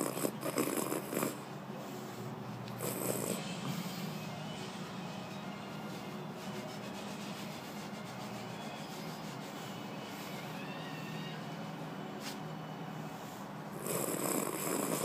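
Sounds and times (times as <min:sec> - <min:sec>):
recorded snoring drone: 0:00.0 - 0:04.5, 0:13.7 - 0:15.0.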